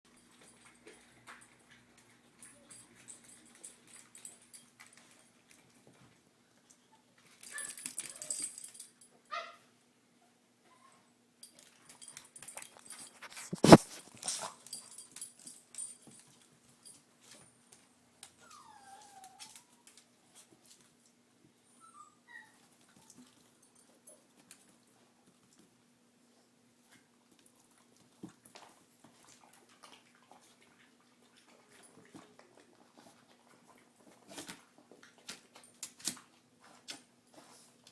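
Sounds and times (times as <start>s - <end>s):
noisy scuffling: 12.3s - 16.2s
dog whimpering: 18.4s - 19.8s, 21.8s - 22.6s.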